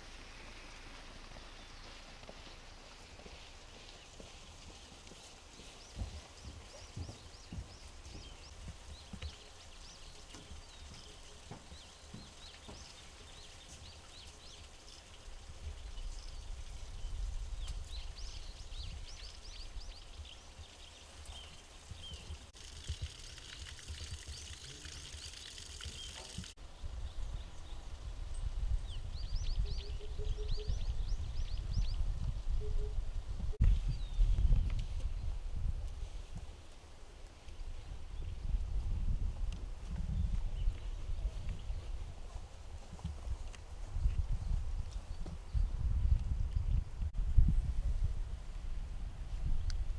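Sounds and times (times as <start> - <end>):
small birds chirping: 0.1 - 35.3.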